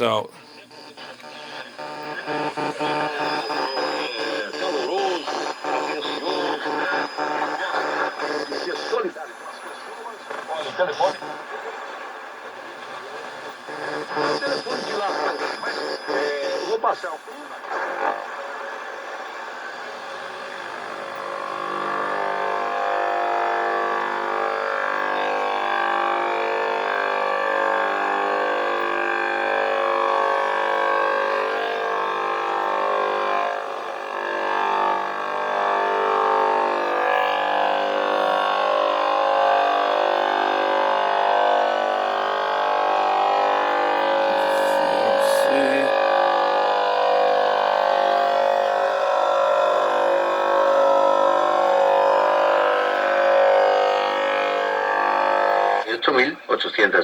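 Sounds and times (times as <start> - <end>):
shortwave radio tone: 0.0 - 22.4, 43.7 - 47.7.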